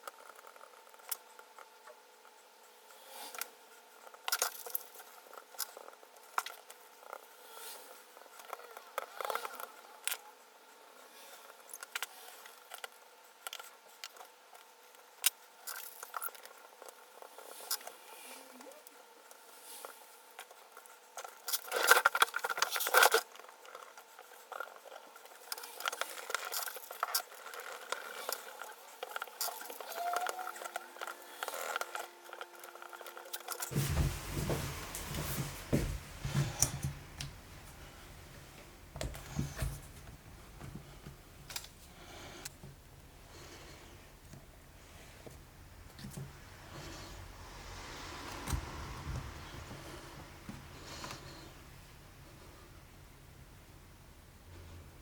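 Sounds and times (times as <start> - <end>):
low handling rumble: 33.7 - 41.4.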